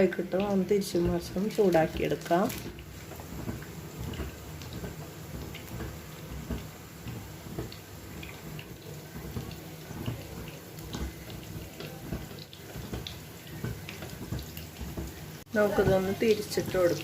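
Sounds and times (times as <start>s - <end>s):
food sizzling in a frying pan: 0.0s - 17.0s.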